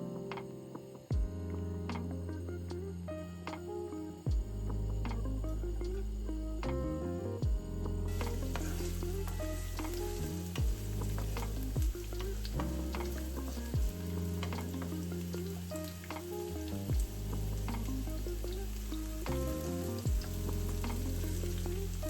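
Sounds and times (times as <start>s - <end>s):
music with deep bass: 0.0s - 22.0s
food sizzling in a pan: 8.2s - 12.5s.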